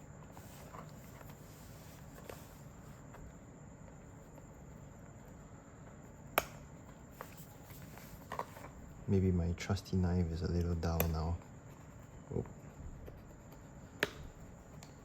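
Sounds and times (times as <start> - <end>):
sharp click: 11.0 - 11.2.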